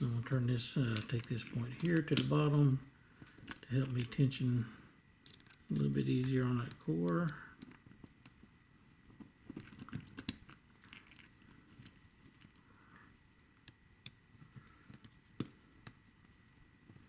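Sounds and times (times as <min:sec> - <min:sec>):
lock pick clicking and scraping: 0:05.2 - 0:05.6.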